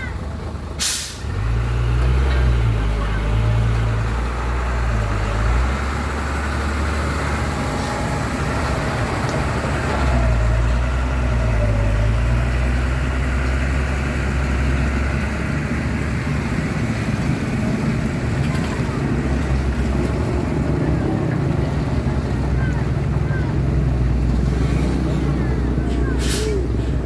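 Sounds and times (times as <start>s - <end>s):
truck engine running: 0.0s - 27.0s.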